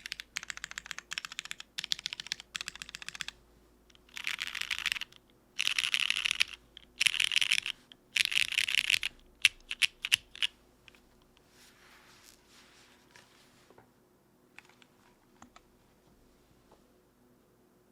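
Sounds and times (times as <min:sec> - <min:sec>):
mechanical keyboard typing: 0:00.0 - 0:10.5.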